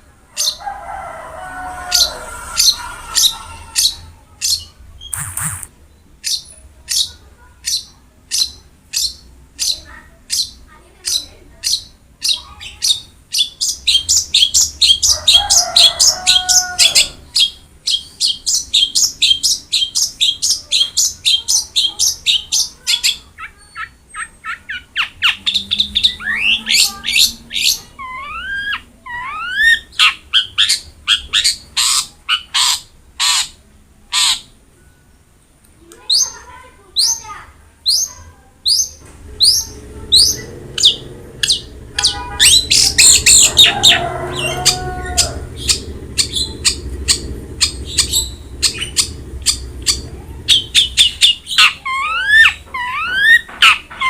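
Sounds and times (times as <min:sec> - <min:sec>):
shrike singing: 0:01.7 - 0:06.5, 0:39.4 - 0:53.5.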